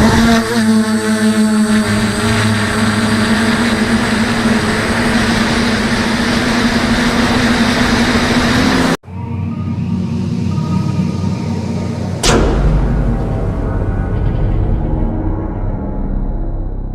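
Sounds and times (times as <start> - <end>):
drone motors and propellers humming: 0.0 - 16.9
music: 9.0 - 16.9.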